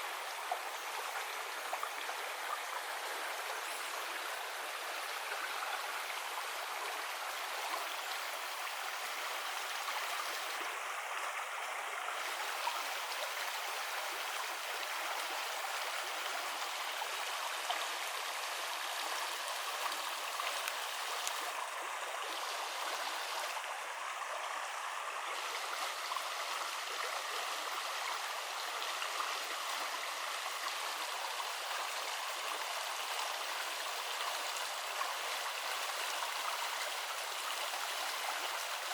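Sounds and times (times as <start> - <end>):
river water flowing: 0.0 - 38.9.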